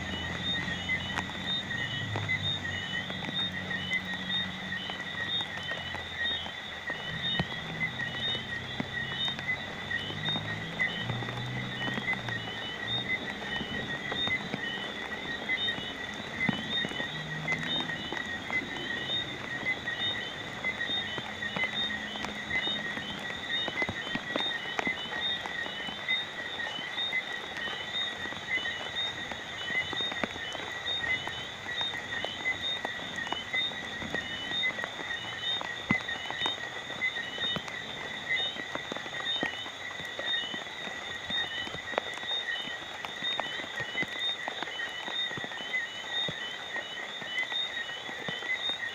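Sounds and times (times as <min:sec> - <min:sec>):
pulsing animal chorus: 0:00.0 - 0:36.6
steady rain: 0:00.0 - 0:48.9
water drips: 0:00.0 - 0:48.9.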